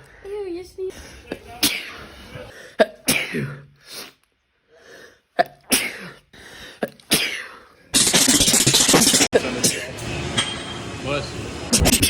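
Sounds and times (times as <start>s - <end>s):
man sneezing: 1.3s - 4.2s.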